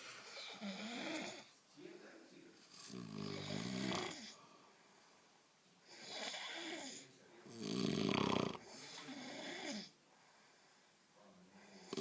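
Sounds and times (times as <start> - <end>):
person snoring: 2.8 - 4.4, 5.9 - 9.9, 11.8 - 12.0.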